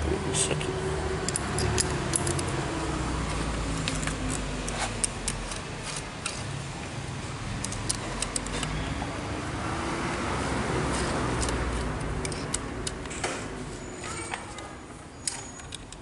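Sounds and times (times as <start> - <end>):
metallic clicks of tool and screws: 1.2 - 2.6, 3.8 - 6.4, 7.6 - 8.8, 11.0 - 13.3, 14.0 - 16.0.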